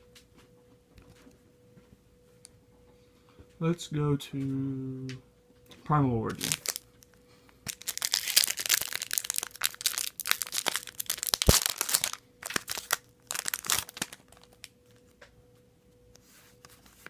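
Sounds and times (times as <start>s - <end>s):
foil wrapper crinkling and tearing: 6.3s - 14.7s
wrapper rustling: 6.4s - 15.0s.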